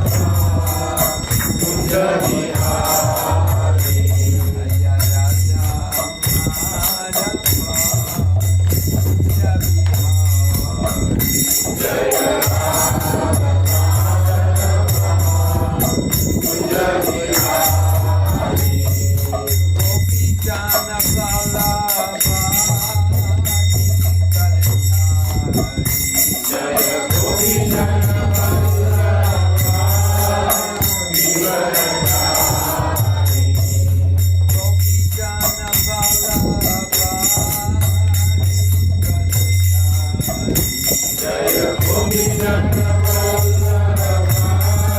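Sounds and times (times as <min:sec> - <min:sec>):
group devotional singing: 0:00.0 - 0:08.5, 0:09.5 - 0:23.3, 0:25.7 - 0:34.2, 0:41.0 - 0:44.9
small hand cymbals ringing: 0:00.0 - 0:44.9.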